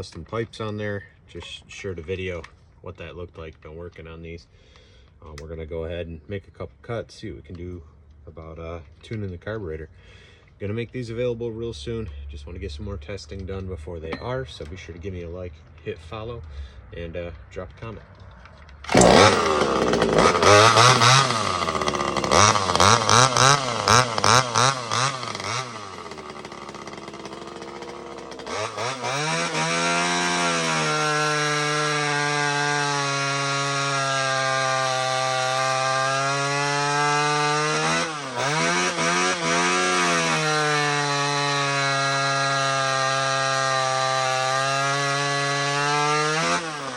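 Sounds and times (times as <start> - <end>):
chainsaw revving: 18.8 - 46.9.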